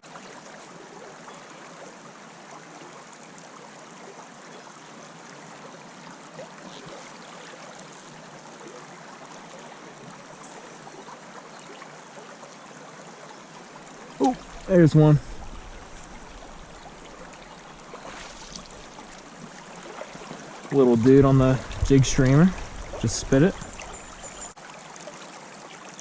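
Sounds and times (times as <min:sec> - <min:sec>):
creek water rushing: 0:00.0 - 0:26.0.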